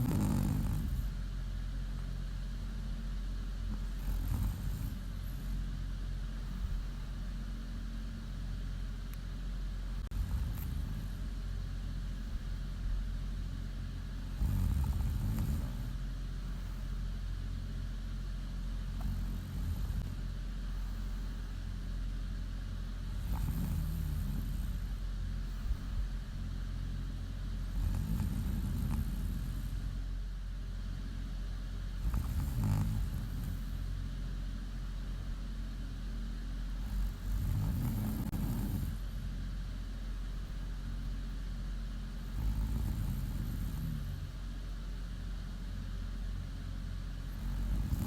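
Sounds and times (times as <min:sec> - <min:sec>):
woman snoring: 0:00.0 - 0:01.2, 0:03.7 - 0:05.6, 0:10.0 - 0:11.3, 0:14.2 - 0:16.0, 0:18.9 - 0:20.2, 0:23.1 - 0:25.0, 0:27.6 - 0:30.0, 0:32.0 - 0:33.9, 0:36.8 - 0:39.3, 0:42.2 - 0:44.4, 0:47.3 - 0:48.0
steady low hum: 0:00.0 - 0:48.0.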